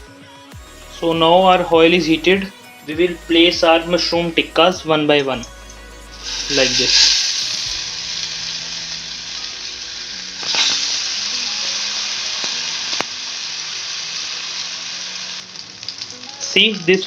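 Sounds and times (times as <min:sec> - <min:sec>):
food sizzling in hot oil: 0:06.1 - 0:17.0.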